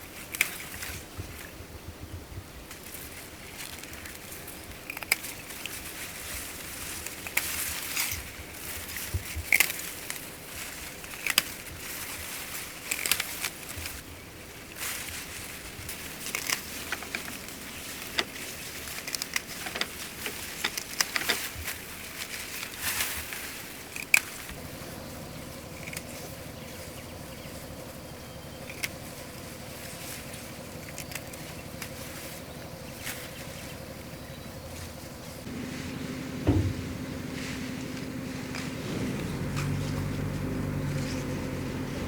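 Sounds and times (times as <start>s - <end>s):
crackling and rustling: 2.6s - 42.0s
sharp clicks and snips: 16.2s - 21.6s, 23.9s - 24.6s, 28.6s - 29.3s, 30.4s - 32.1s
steady low hum: 23.9s - 42.0s.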